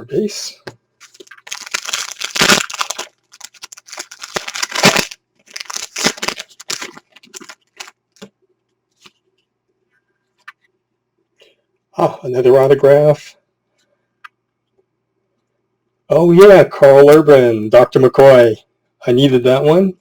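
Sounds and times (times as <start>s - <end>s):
foil wrapper crinkling and tearing: 1.0s - 8.0s.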